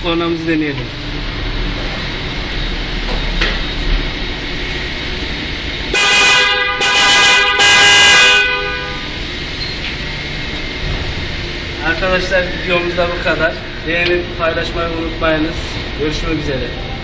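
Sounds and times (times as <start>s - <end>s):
car horn blasts: 5.9s - 9.2s.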